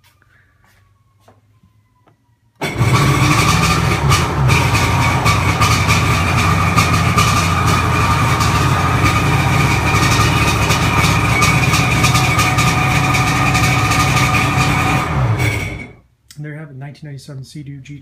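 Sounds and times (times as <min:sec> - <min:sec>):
two-stroke engine idling: 0:02.6 - 0:16.0.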